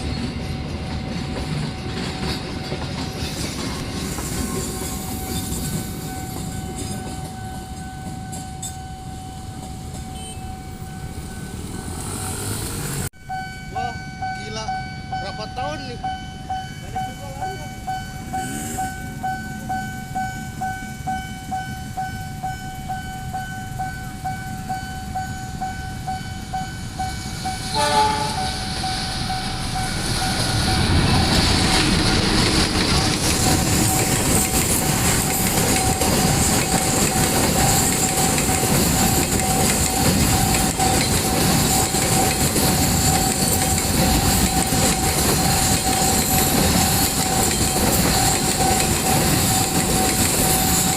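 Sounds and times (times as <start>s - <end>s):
train passing with wheel clatter: 0.0s - 50.9s
level crossing warning signal: 13.2s - 31.2s
train horn blast: 27.7s - 28.7s.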